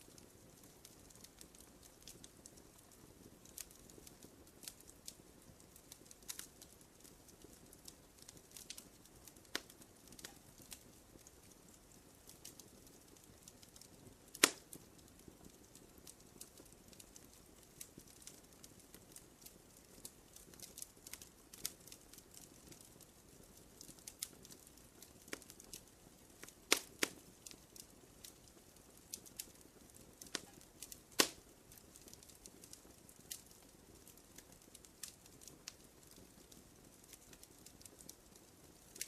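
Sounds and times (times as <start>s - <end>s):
campfire crackling: 0.0s - 39.0s
flame rushing: 30.2s - 32.2s.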